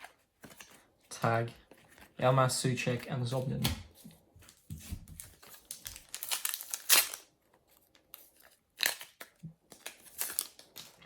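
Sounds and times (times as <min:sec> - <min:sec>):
wrapper crinkling and rustling: 0:04.5 - 0:11.0
wrapper tearing open: 0:05.2 - 0:11.0.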